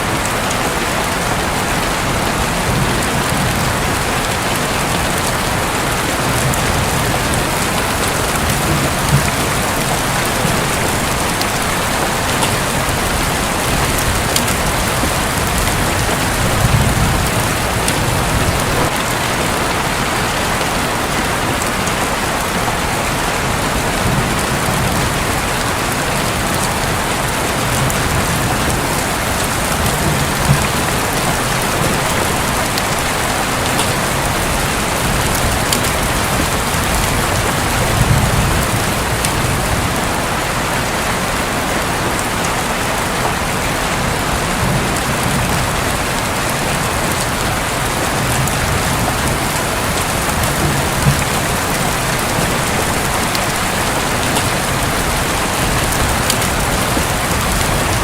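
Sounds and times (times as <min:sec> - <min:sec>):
heavy rain on a roof: 0:00.0 - 0:58.0
raindrop ticks: 0:02.7 - 0:19.2, 0:24.0 - 0:40.2, 0:44.6 - 0:58.0.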